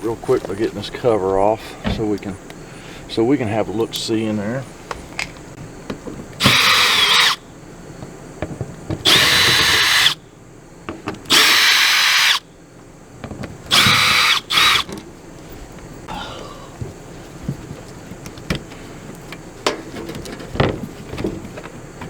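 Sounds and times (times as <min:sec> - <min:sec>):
power drill running: 0:06.4 - 0:07.4, 0:09.1 - 0:10.2, 0:11.3 - 0:12.4, 0:13.7 - 0:14.9.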